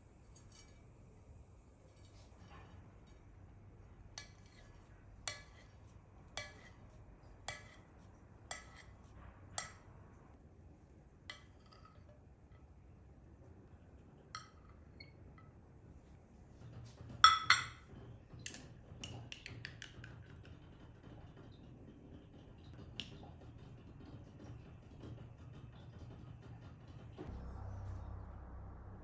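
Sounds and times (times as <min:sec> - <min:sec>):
kitchenware clinking: 0:11.3 - 0:12.7, 0:14.3 - 0:15.5, 0:17.2 - 0:17.9.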